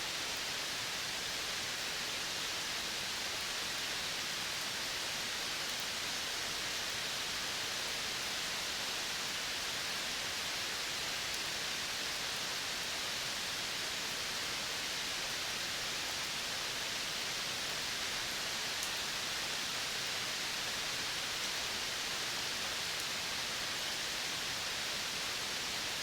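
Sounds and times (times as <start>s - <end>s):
outdoor ambient hiss: 0.0s - 26.0s.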